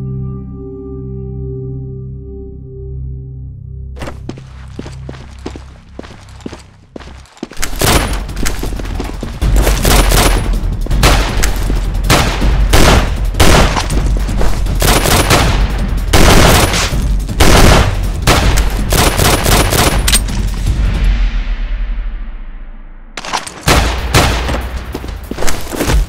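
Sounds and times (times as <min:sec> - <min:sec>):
steady low rumble: 0:03.0 - 0:25.3
rapid gunfire bursts: 0:09.6 - 0:20.1.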